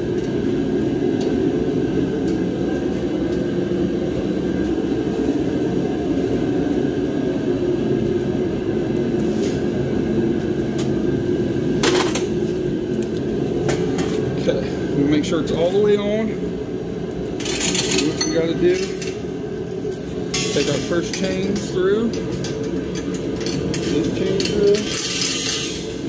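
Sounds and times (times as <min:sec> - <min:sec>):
metallic clink: 0:17.4 - 0:26.0.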